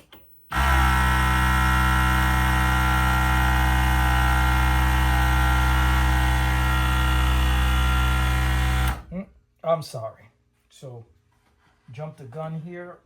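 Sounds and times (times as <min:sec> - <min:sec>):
air compressor running: 0:00.5 - 0:09.1.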